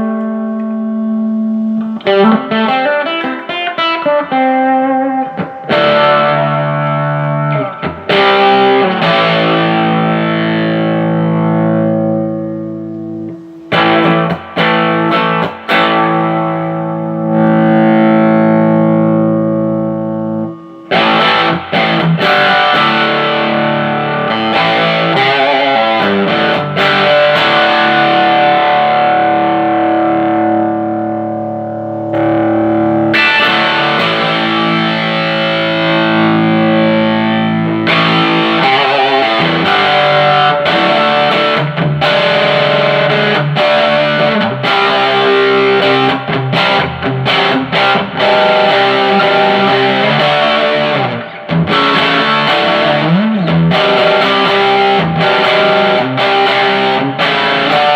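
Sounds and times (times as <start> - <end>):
distorted electric guitar: 0.0 - 57.9.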